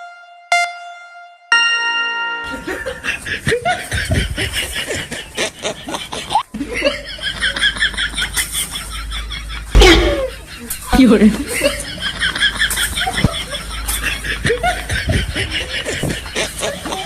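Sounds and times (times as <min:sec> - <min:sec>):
long electronic beep: 0:00.0 - 0:03.0
people laughing: 0:02.5 - 0:17.0.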